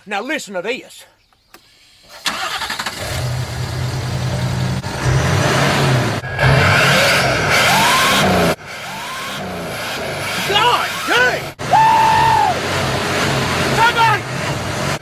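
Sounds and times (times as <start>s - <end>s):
truck engine revving: 2.3s - 15.0s
turbo whistle: 7.0s - 12.6s.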